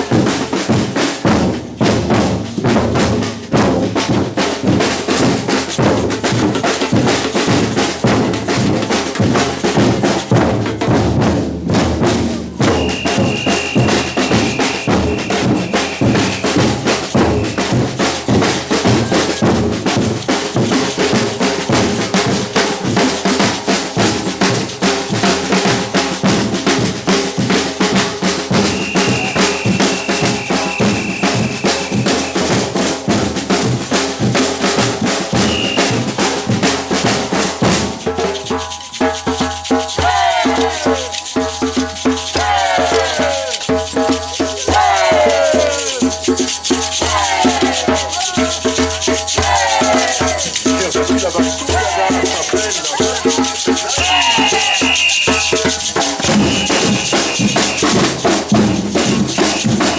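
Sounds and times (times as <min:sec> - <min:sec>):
samba percussion band drumming: 0:00.0 - 0:59.9
steady high tone: 0:47.9 - 0:57.6.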